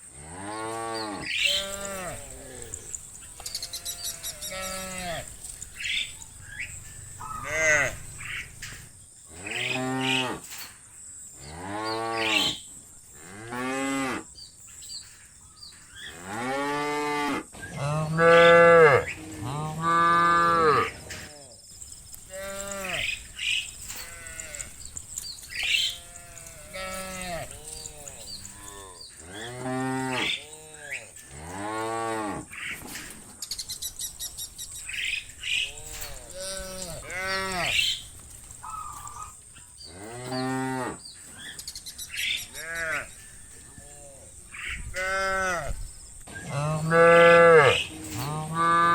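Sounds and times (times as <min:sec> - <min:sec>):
cows mooing: 0:00.2 - 0:10.6, 0:16.0 - 0:21.5, 0:22.3 - 0:32.5, 0:35.4 - 0:41.0, 0:42.2 - 0:45.8, 0:46.4 - 0:48.9.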